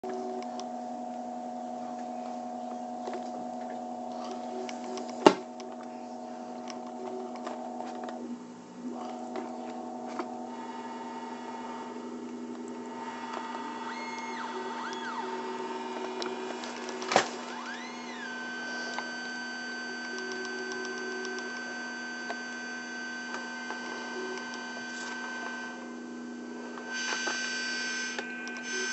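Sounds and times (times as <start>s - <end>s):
synthesizer droning tones: 0.0s - 28.9s
sweeping pitch glides: 8.9s - 28.9s.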